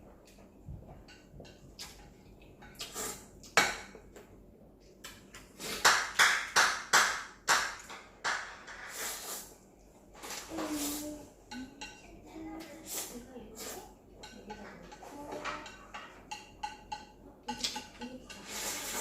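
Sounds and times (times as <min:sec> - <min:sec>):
utensils clinking against bowl: 0:10.2 - 0:12.7, 0:13.6 - 0:19.0.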